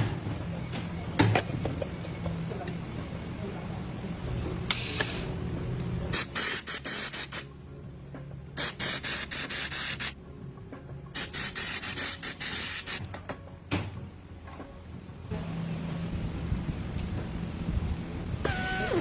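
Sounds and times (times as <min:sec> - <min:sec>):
steady low machinery hum: 0:00.0 - 0:09.3, 0:10.1 - 0:19.0
machine hissing bursts: 0:06.1 - 0:07.5, 0:08.6 - 0:10.2, 0:11.2 - 0:13.1.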